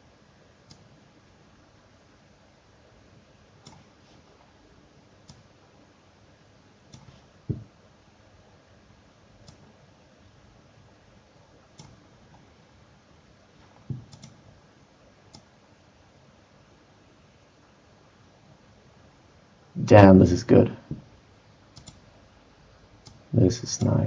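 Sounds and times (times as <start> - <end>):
computer mouse clicks: 0.6 - 0.9, 3.6 - 3.9, 5.2 - 5.5, 6.9 - 7.2, 9.4 - 9.7, 11.7 - 12.4, 13.7 - 14.4, 15.3 - 15.5, 21.7 - 22.0.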